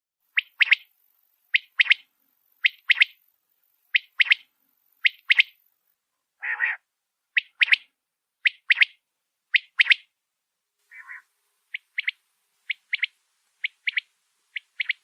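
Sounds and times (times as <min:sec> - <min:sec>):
quail calling: 0:06.4 - 0:06.8, 0:10.9 - 0:15.0.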